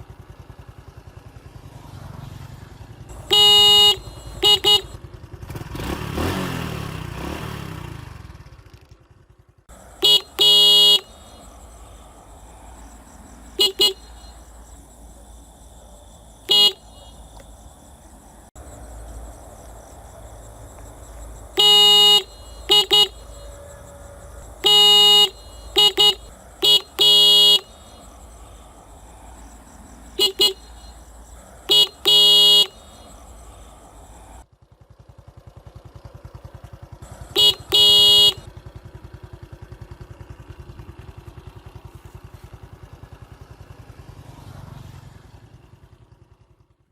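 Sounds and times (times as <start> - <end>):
motorcycle horn beeping: 3.1 - 5.1, 9.8 - 12.0, 13.4 - 15.1, 16.3 - 17.8, 21.4 - 28.6, 30.1 - 33.4, 37.1 - 38.5.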